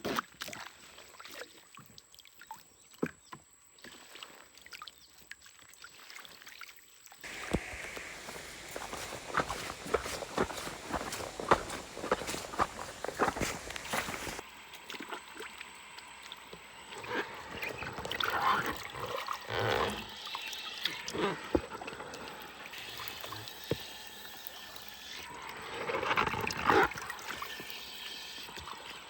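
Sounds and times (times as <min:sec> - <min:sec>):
river water sloshing and trickling: 0:07.2 - 0:14.4.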